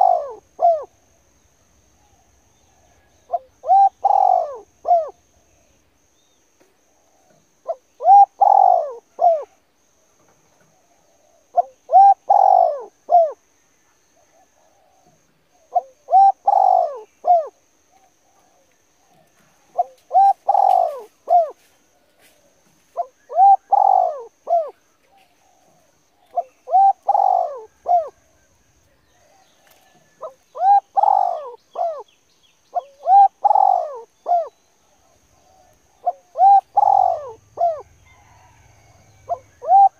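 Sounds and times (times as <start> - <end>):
bird calling: 0.0 - 1.3, 2.0 - 6.4, 7.0 - 9.6, 10.6 - 13.4, 14.2 - 21.7, 22.9 - 39.9.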